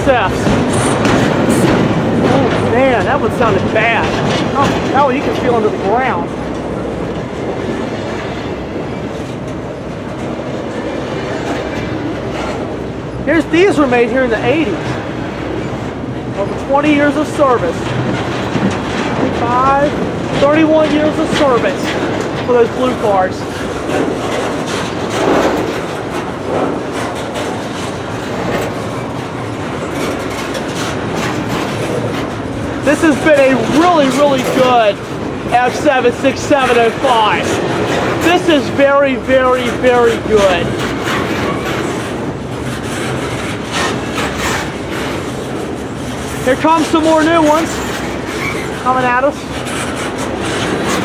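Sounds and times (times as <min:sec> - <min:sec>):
steel train wheels on rails: 0:00.0 - 0:51.0.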